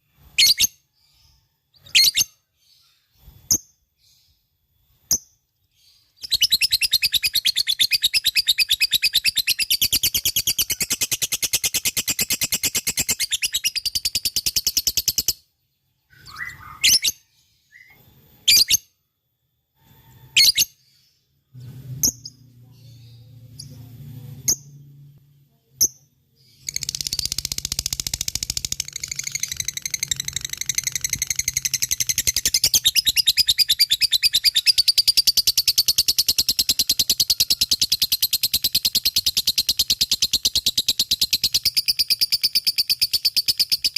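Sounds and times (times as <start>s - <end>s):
loud bird chirps: 0.2s - 19.0s, 25.9s - 43.9s
lovebird chattering: 25.8s - 43.9s.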